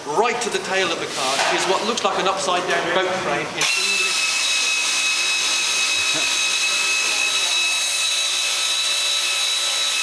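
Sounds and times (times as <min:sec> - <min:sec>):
power tool high-pitched whine: 0:03.6 - 0:10.0.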